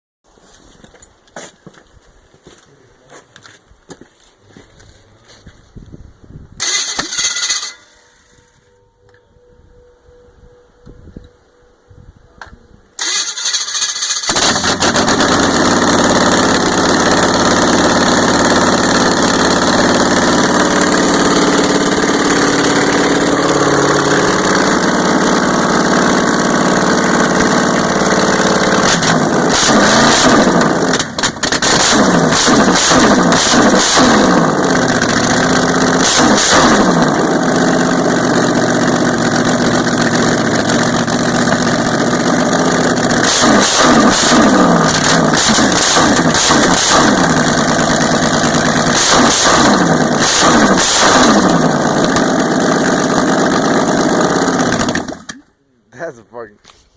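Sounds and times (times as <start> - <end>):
engine running and revving: 13.0 - 55.3
engine cranking and starting: 13.0 - 55.5.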